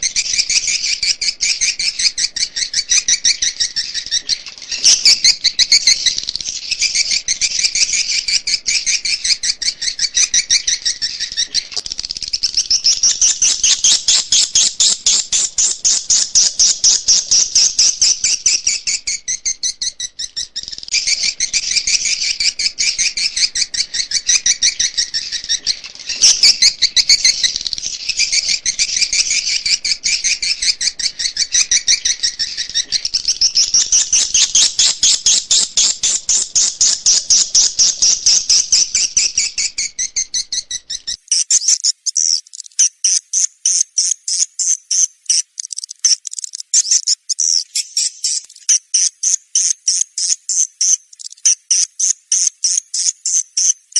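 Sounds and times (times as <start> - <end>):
pulsed chirping: 0.0 - 41.2
swiftlets twittering: 0.0 - 41.2.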